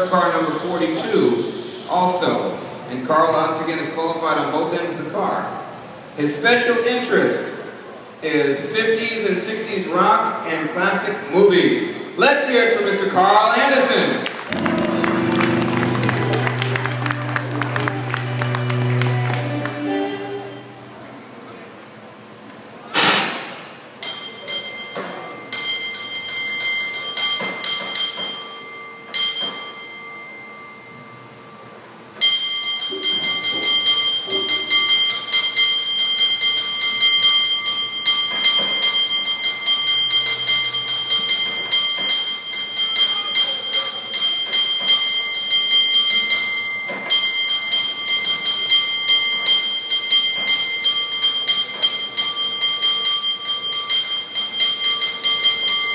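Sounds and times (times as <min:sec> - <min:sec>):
hand-rung bell: 0:24.0 - 0:31.6, 0:32.2 - 0:55.9.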